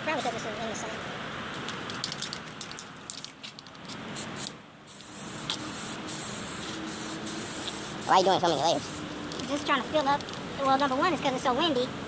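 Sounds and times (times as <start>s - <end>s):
aerosol can spraying: 3.9s - 10.1s.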